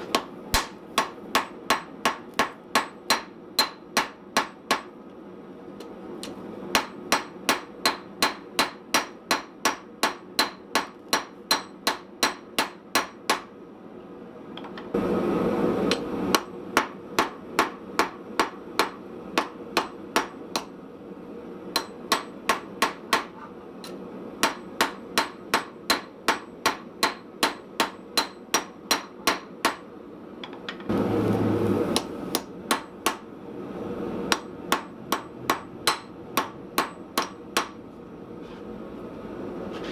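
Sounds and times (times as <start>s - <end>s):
hammer ringing on anvil: 11.2s - 13.4s.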